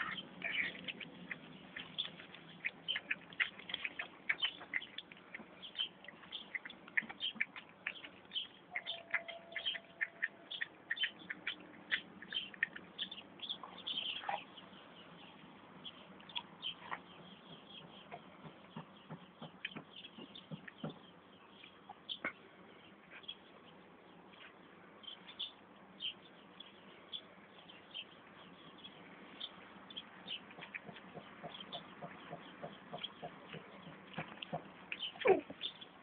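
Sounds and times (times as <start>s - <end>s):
puppy whining: 35.1s - 35.6s.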